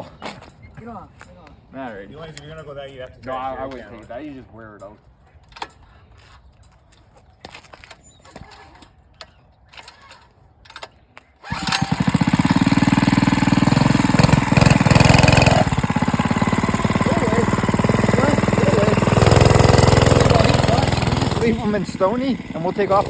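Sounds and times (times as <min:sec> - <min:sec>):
small gasoline engine running: 0:11.4 - 0:23.0.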